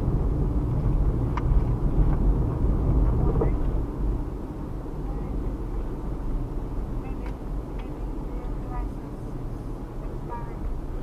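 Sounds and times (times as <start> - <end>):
car engine rumble from inside cabin: 0.0 - 11.0
tyres on road: 0.0 - 11.0.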